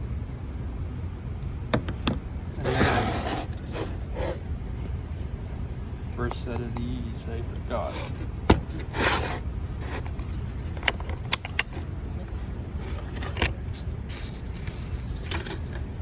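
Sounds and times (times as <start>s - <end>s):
steady low hum: 0.0s - 16.0s
plastic case rustling: 2.6s - 5.3s, 7.4s - 15.9s.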